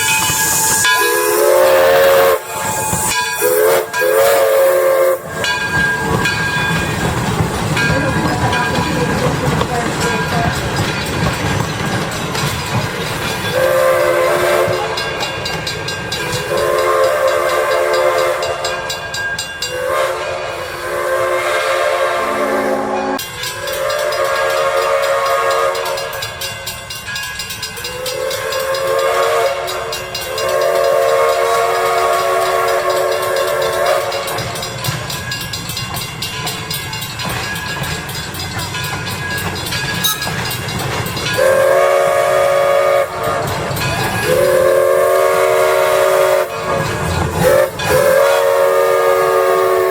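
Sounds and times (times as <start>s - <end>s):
steam locomotive whistle blasts: 0.0s - 6.2s, 13.4s - 15.5s, 16.1s - 26.4s, 27.8s - 34.7s, 40.0s - 40.4s, 41.3s - 49.9s
hiss of steam: 0.0s - 7.1s.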